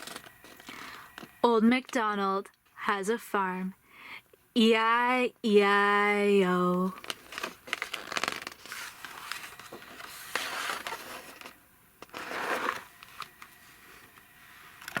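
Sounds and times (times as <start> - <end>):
rustling and crinkling: 6.9 - 15.0.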